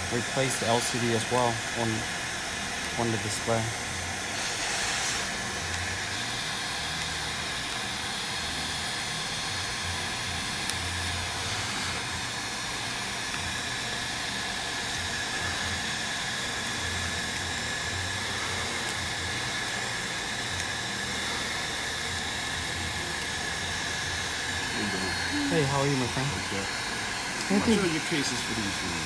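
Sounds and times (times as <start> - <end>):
faint high whine: 0.0 - 29.0
heat gun fan hiss: 0.0 - 29.0.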